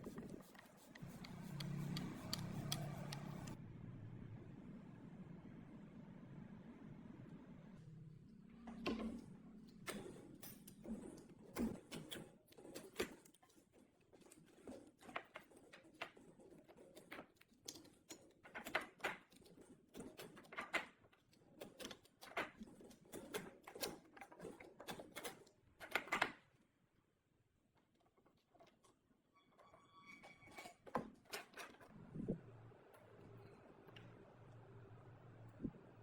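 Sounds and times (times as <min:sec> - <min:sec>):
small clicks and taps: 0:00.0 - 0:03.6.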